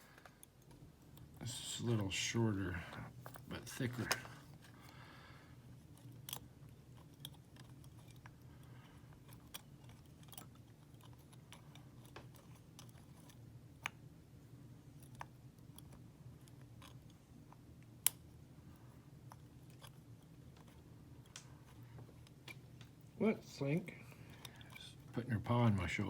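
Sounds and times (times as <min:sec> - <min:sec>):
low steady hum: 0:00.0 - 0:26.0
lock pick clicks and scratches: 0:05.8 - 0:14.0, 0:14.9 - 0:18.3, 0:19.2 - 0:22.7.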